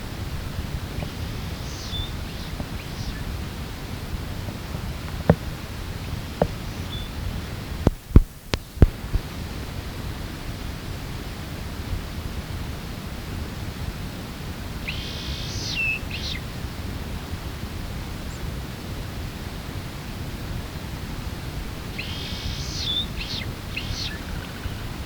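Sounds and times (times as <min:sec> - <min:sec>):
low rumbling background noise: 0:00.0 - 0:25.0
small songbird singing: 0:00.8 - 0:03.4, 0:06.0 - 0:07.2, 0:14.8 - 0:16.4, 0:21.9 - 0:25.0.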